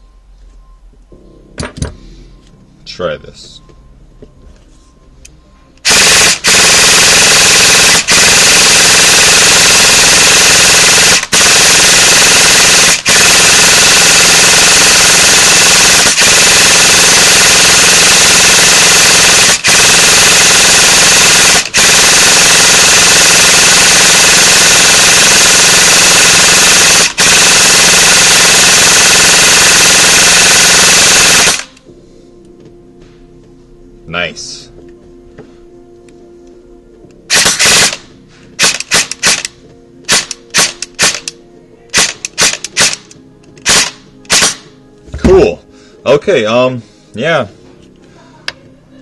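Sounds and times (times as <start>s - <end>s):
airsoft gun firing full-auto: 5.8s - 31.8s, 37.3s - 38.0s, 38.6s - 39.5s, 40.1s - 41.3s, 41.9s - 43.0s, 43.6s - 44.7s.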